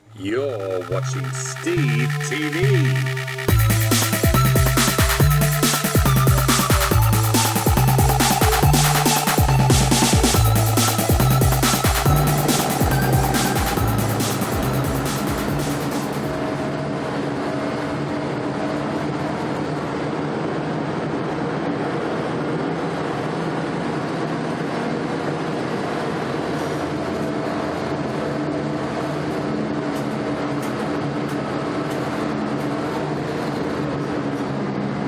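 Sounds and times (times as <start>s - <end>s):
vehicle engine drone: 0.0s - 17.2s.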